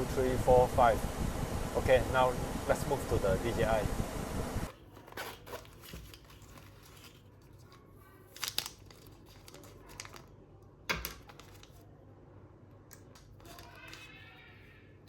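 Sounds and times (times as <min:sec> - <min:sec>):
rustling and crinkling: 0:04.7 - 0:10.4, 0:11.1 - 0:11.9.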